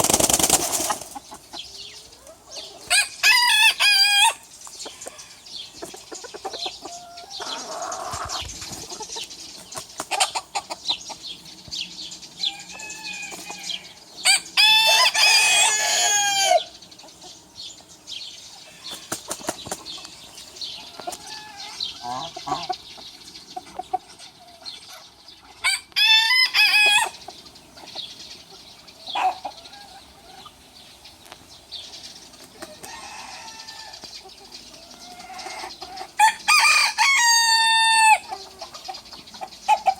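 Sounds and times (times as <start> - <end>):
wings flapping: 0.0 - 1.2
chickens clucking softly: 0.0 - 36.5, 37.2 - 39.9
rooster crowing: 12.4 - 16.7, 25.6 - 27.2, 32.9 - 34.0, 36.2 - 38.3.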